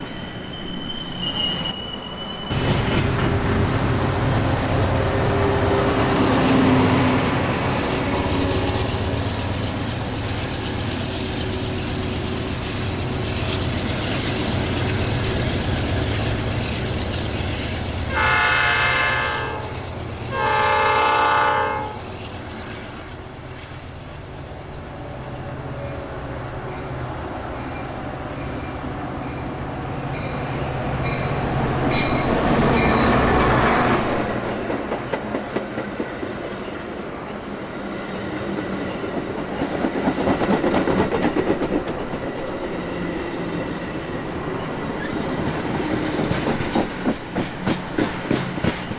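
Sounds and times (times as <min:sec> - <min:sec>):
trains rumbling on rails: 0:00.0 - 0:48.9
locomotive horn blasts: 0:18.1 - 0:19.7, 0:20.3 - 0:22.0.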